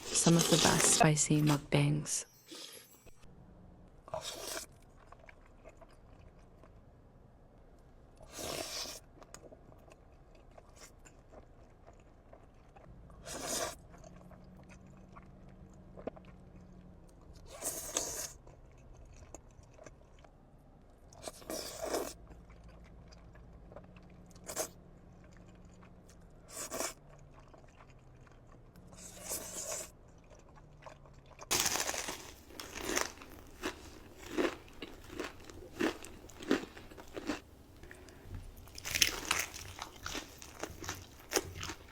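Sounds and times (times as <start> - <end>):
crunchy chewing: 4.1 - 6.8, 21.1 - 41.9.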